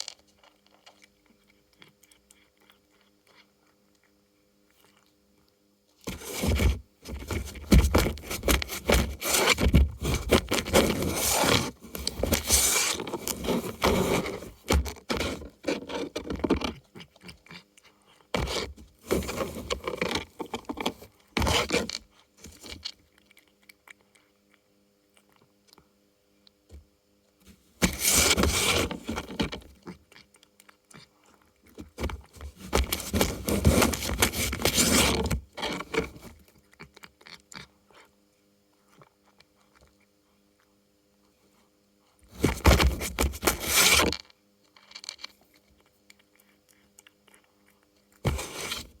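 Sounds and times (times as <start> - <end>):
cardboard toy scraping and rustling: 6.1 - 16.8, 18.4 - 22.7, 27.5 - 29.7, 31.9 - 36.4, 42.3 - 44.3, 48.2 - 49.0.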